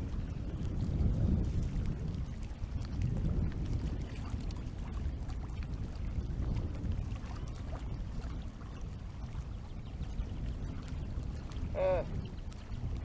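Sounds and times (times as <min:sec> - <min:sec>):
wind noise on microphone: 0:00.0 - 0:13.0.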